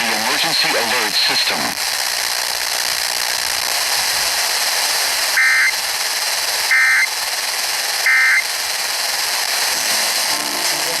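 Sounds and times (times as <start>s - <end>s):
radio hiss: 0.0s - 11.0s
electronic data bursts: 5.3s - 5.8s, 6.6s - 7.3s, 8.0s - 9.0s.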